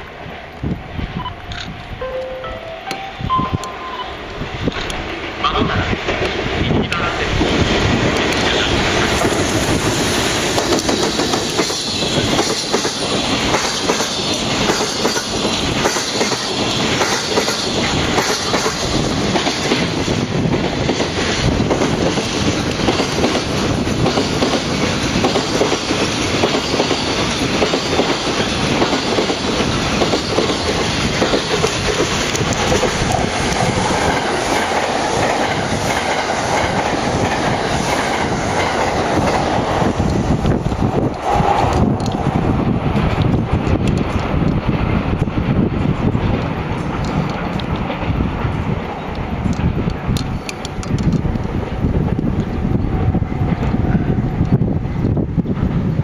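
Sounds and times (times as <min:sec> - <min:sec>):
freight train wheels clattering: 0:02.9 - 0:56.0.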